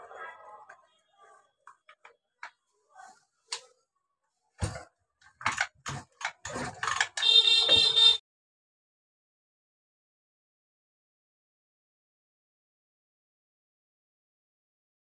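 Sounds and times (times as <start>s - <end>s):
tools and metal parts clicking: 5.2s - 7.9s.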